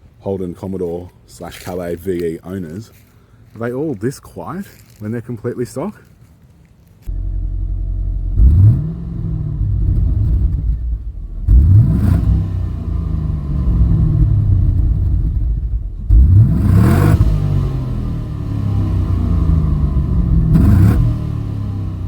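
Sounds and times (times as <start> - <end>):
car engine idling and revving: 7.1 - 22.0.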